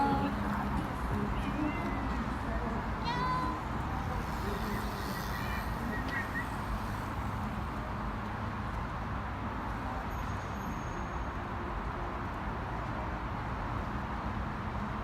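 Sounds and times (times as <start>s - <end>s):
road traffic rumble: 0.0s - 15.0s
faint high whine: 3.9s - 7.7s.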